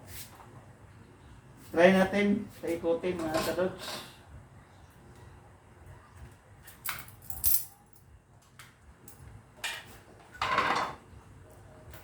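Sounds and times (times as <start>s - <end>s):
metal clinks and rattles: 6.7s - 8.0s.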